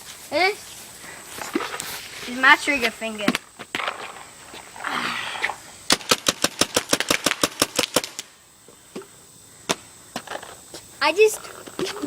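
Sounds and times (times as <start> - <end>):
paintball gun shots: 5.9 - 8.3.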